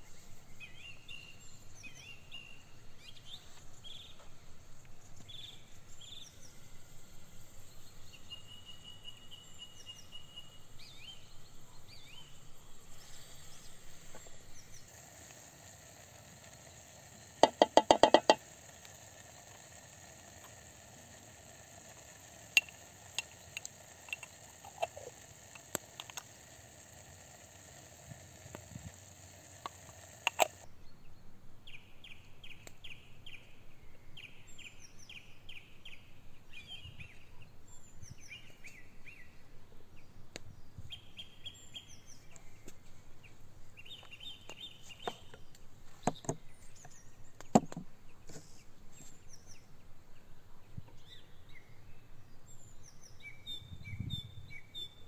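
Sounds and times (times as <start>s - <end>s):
steady hum: 0.0s - 30.8s
small birds chirping trills: 0.0s - 55.0s
knocks and clicks: 17.4s - 18.5s.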